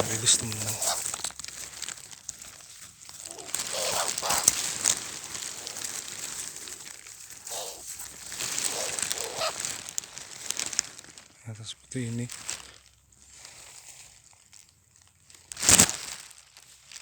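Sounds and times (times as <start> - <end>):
rustling crinkling noise: 0.0 - 17.0.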